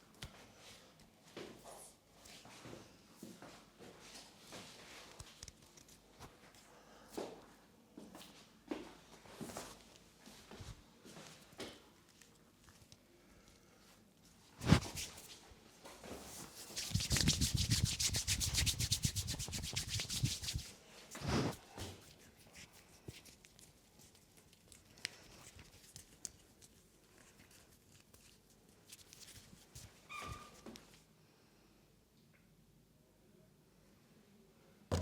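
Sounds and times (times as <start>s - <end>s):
hands rubbing over skin: 14.6s - 15.4s, 16.3s - 23.4s.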